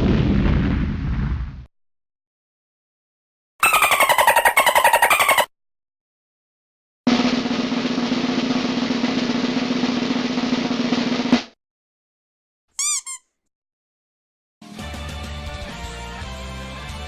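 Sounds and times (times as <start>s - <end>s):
rapid rattling effect: 7.1s - 11.6s
snare drum roll: 7.1s - 11.6s.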